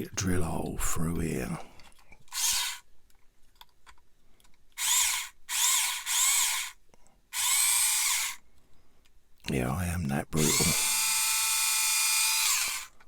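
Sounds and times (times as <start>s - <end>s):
electric drill whining: 2.3s - 2.8s, 4.8s - 6.8s, 7.4s - 8.4s, 10.4s - 13.0s.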